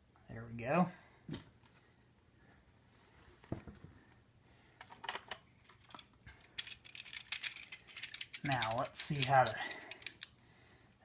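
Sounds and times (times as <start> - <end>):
plastic toy parts clicking: 4.8 - 10.4.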